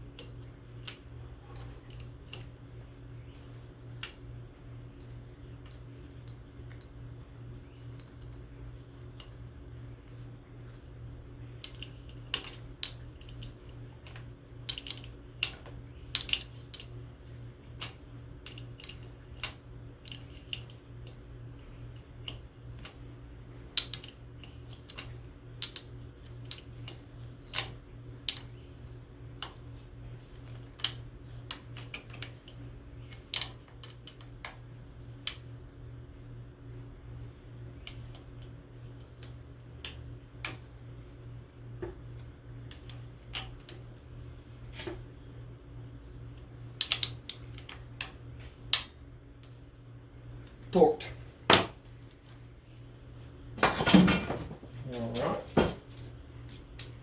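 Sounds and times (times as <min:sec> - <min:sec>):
steady low hum: 0:00.0 - 0:57.0
tools and metal parts clinking: 0:11.6 - 0:21.2, 0:23.8 - 0:29.6.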